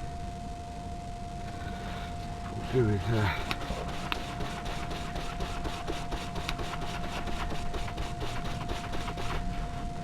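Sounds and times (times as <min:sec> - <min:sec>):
faint whine: 0:00.0 - 0:10.0
scrubbing strokes: 0:02.6 - 0:09.9.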